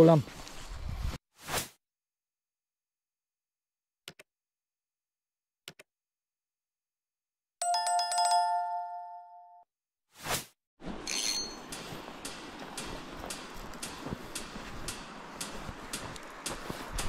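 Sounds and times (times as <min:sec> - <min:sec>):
loud bell ringing: 0:07.6 - 0:09.5, 0:11.1 - 0:11.7
faint clicks: 0:11.7 - 0:17.0.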